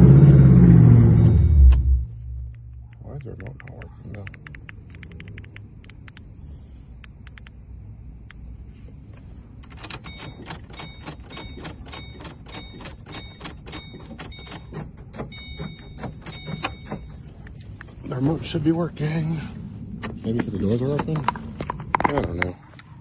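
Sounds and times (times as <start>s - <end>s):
faint high beeping tone: 1.0s - 2.2s.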